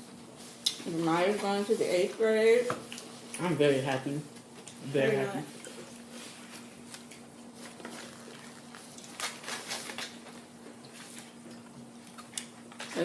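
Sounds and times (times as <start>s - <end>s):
steady low hum: 0.0s - 13.0s
eating and chewing sounds: 4.4s - 13.0s.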